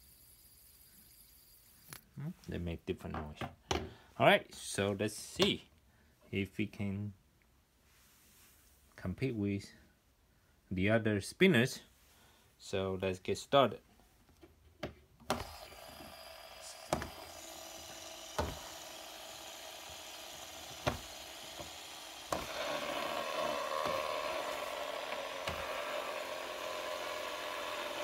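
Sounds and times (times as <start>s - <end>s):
fidget spinners whirring: 0.0s - 2.0s.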